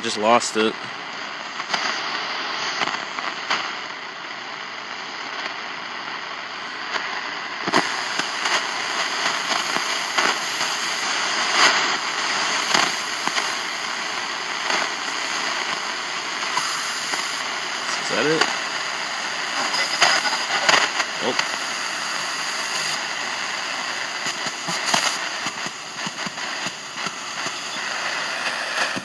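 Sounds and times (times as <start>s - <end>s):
radio static hissing: 0.0s - 29.0s
sharp radio crackles and clicks: 0.0s - 29.0s
faint steady whistles: 27.0s - 28.9s.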